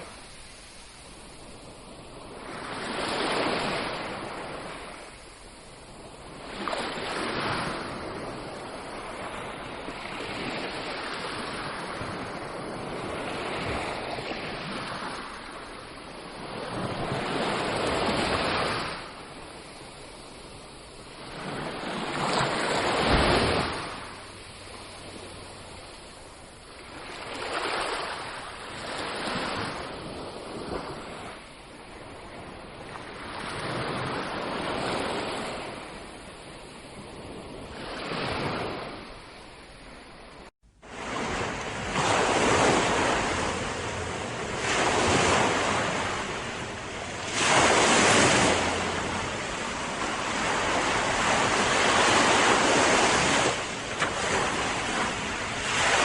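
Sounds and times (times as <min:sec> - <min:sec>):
sea waves washing onto shore: 0:00.0 - 0:56.0.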